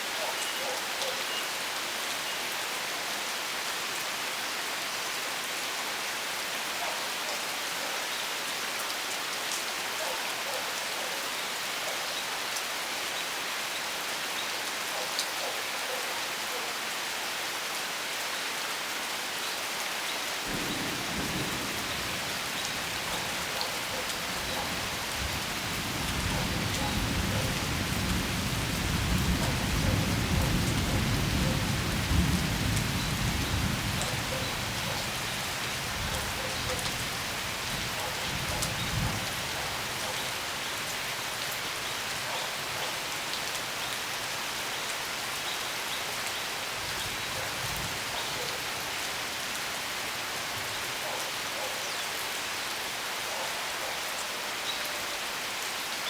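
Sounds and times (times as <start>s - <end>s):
steady rain falling: 0.0s - 56.0s
thunder rumbling: 20.5s - 34.0s.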